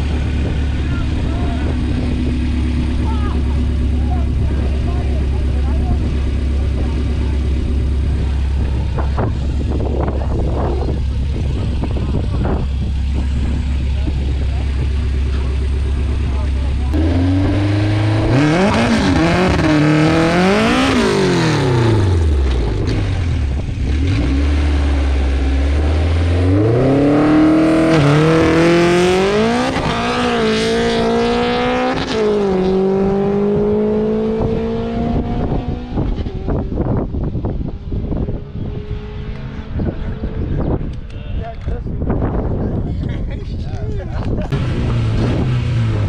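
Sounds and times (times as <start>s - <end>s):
clatter and noise: 0.0s - 24.5s
car engine revving and accelerating: 0.0s - 41.1s, 44.5s - 46.0s.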